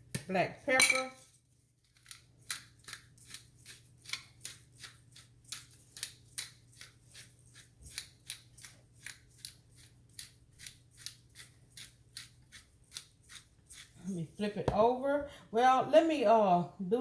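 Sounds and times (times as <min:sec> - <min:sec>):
pepper grinder scraping: 0:01.8 - 0:14.6.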